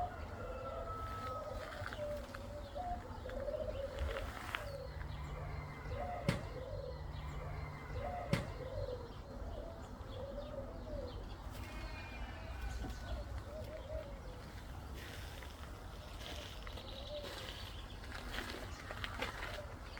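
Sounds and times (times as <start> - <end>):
pigeon cooing: 0.0 - 14.7.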